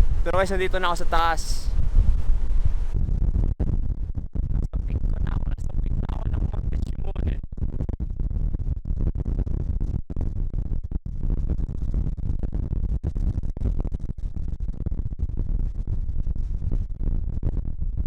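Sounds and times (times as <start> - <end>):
wind buffeting microphone: 0.0 - 9.8.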